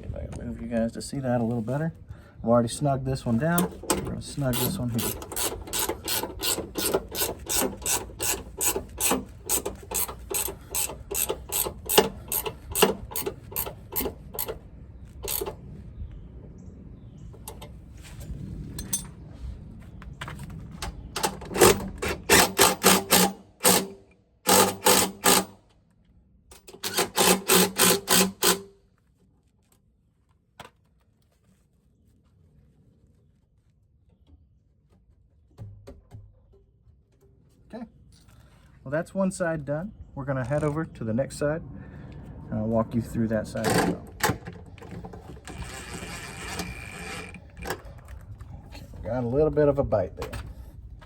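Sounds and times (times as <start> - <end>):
ratcheting wrench clicking: 3.6 - 14.6, 15.2 - 15.5, 21.6 - 25.6, 26.6 - 28.6.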